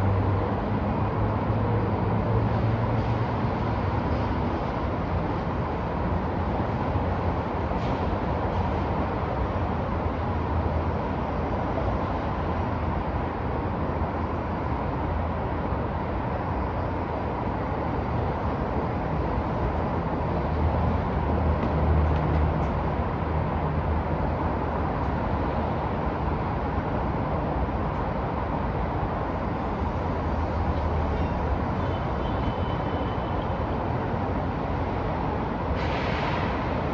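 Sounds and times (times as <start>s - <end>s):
passing vehicles: 0.0s - 36.9s
heavy vehicle engine rumble: 33.8s - 36.9s.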